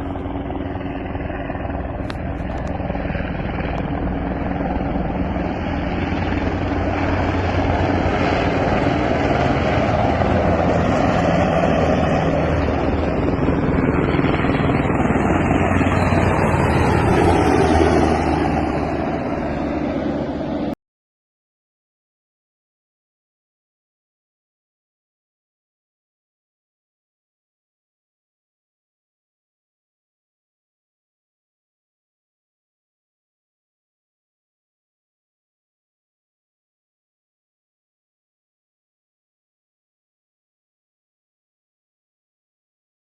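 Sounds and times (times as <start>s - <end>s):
helicopter rotor and engine noise: 0.0s - 20.8s.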